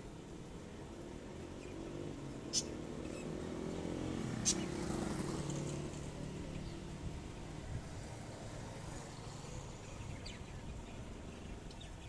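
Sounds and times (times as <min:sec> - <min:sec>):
faint bird chirps: 0:02.5 - 0:03.2.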